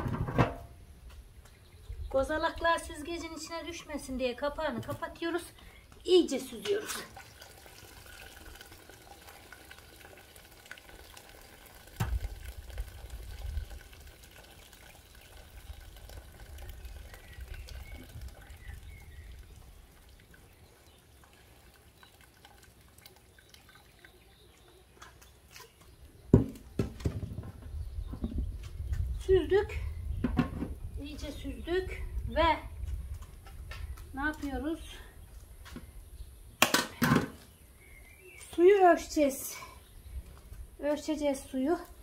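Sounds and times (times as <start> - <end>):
water pouring through a strainer: 6.7 - 24.7.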